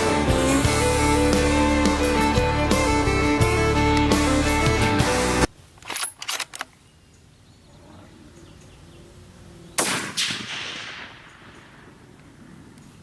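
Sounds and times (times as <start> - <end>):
intro music: 0.0 - 5.5
rifle shot: 9.8 - 12.0.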